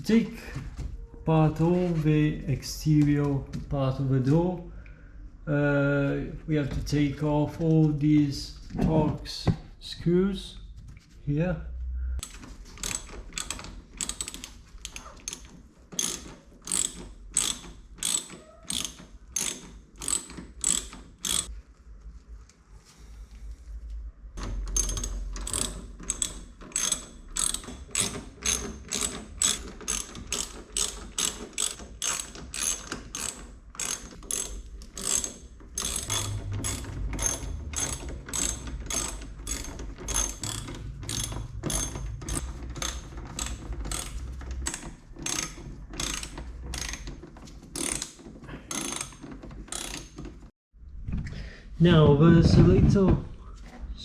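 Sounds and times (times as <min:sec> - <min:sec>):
hand ratchet clicking: 0:12.2 - 0:21.5, 0:24.4 - 0:50.5.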